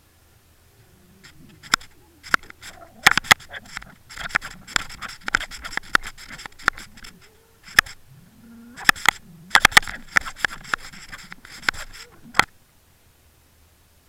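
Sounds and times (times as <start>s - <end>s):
underwater clicks and knocks: 1.3s - 8.0s, 8.8s - 12.5s.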